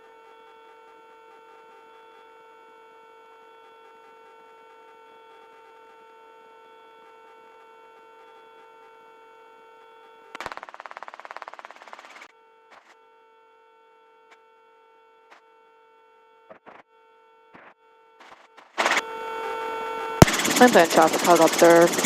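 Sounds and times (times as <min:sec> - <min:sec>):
radio static crackle: 0:17.5 - 0:19.5, 0:20.2 - 0:22.0
helicopter cockpit hum: 0:17.6 - 0:22.0.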